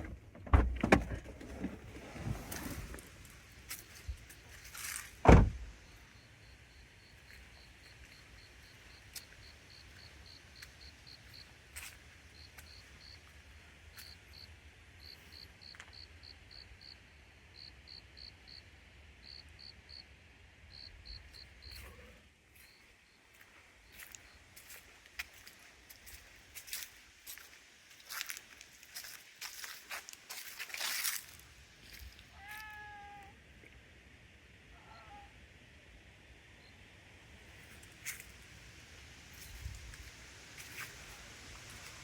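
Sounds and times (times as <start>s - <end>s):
heavy thump: 5.2s - 5.7s
insect chirping: 5.5s - 20.1s, 20.7s - 21.8s, 22.6s - 32.2s.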